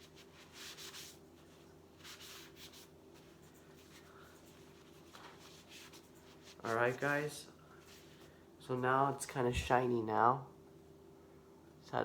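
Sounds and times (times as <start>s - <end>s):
phone being wiped: 0.0s - 8.3s
low steady hum: 0.0s - 12.0s.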